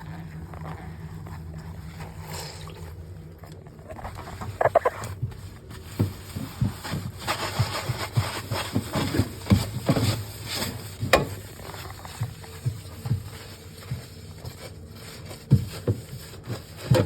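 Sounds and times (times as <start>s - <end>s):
items knocked and scraped: 3.8s - 14.8s.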